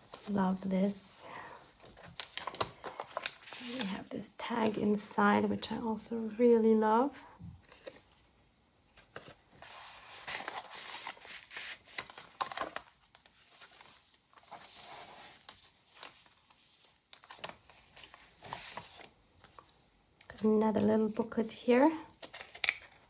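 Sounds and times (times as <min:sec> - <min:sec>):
paper pages rustling and crinkling: 0:01.7 - 0:05.0, 0:07.6 - 0:08.2, 0:08.9 - 0:20.4.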